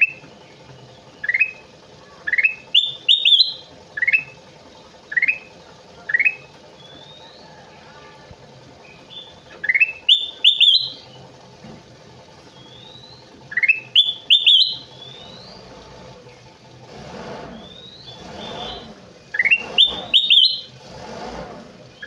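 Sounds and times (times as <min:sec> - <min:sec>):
bird singing whistled notes: 0:00.0 - 0:04.4, 0:05.1 - 0:05.5, 0:06.1 - 0:07.6, 0:08.9 - 0:11.2, 0:12.5 - 0:15.7, 0:17.6 - 0:20.8.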